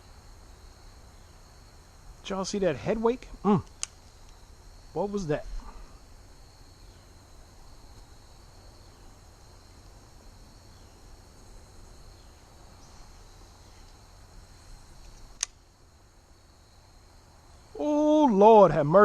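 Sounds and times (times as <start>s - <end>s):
crickets and insects chirping: 0.0s - 19.0s
sharp click: 3.6s - 4.4s, 15.0s - 15.6s.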